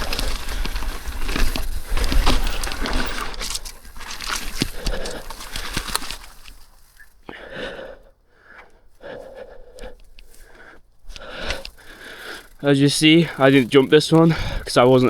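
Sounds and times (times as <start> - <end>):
person breathing heavily: 4.6 - 5.9, 7.2 - 12.6, 14.2 - 14.8.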